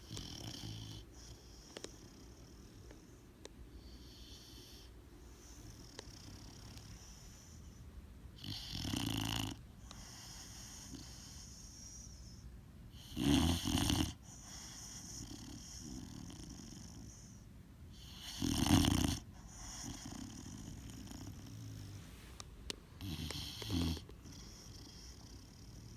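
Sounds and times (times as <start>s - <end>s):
pet snoring: 0.0s - 3.1s, 3.8s - 7.6s, 8.4s - 12.1s, 12.9s - 22.3s, 23.0s - 25.9s
soft breathing: 1.0s - 8.0s, 19.3s - 25.9s.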